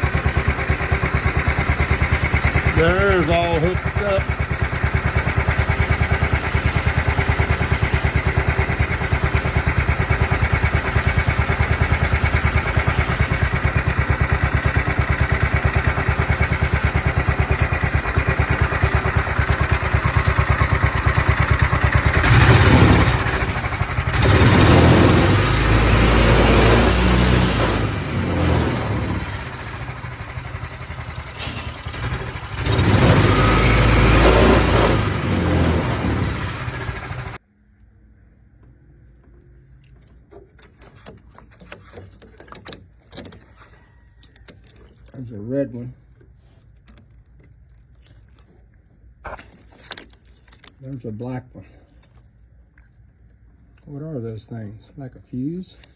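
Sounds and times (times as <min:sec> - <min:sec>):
small gasoline engine running: 0:00.0 - 0:37.4.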